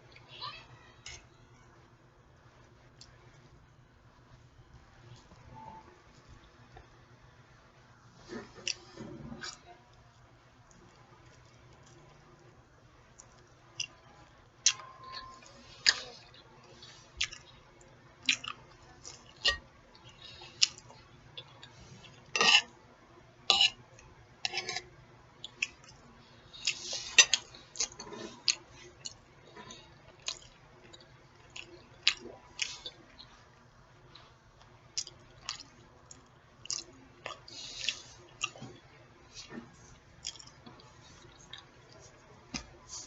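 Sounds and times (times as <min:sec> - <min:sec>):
chewing with lip smacks: 0:14.6 - 0:17.6, 0:18.2 - 0:22.3, 0:25.4 - 0:33.4, 0:34.1 - 0:38.7, 0:39.4 - 0:42.1.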